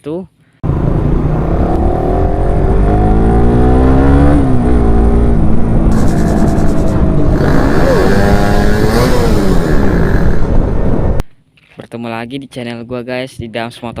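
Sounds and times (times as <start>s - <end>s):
motorcycle engine revving and idling: 0.6s - 11.2s.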